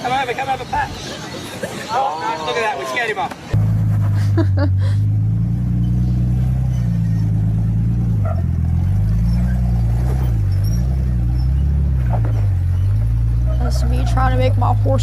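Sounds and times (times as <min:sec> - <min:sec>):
vehicle engine straining under load: 0:03.4 - 0:15.0.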